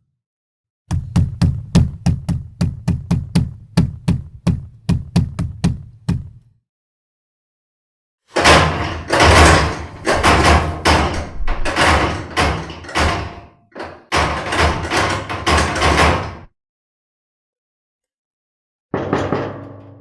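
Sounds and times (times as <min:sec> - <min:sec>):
heavy banging on a door: 0:00.9 - 0:06.4, 0:08.4 - 0:16.5, 0:19.0 - 0:20.0.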